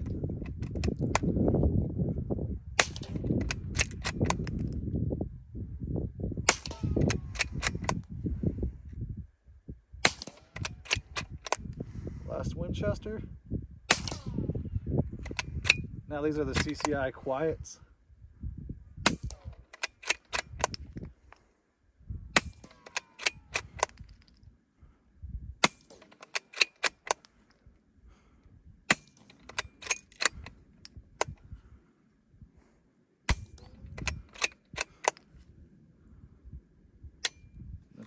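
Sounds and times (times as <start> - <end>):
rifle bolt clicking: 0.4 - 1.3, 2.8 - 4.8, 6.6 - 8.0, 10.2 - 11.7, 15.2 - 15.8, 16.5 - 17.0, 19.1 - 20.9, 22.4 - 24.4, 25.6 - 27.3, 28.9 - 31.4, 33.3 - 35.3
suppressed rifle shots: 2.8 - 4.7, 6.5 - 8.0, 10.0 - 11.7, 13.9 - 14.4, 22.4 - 24.1, 28.9 - 30.5, 33.3 - 35.3.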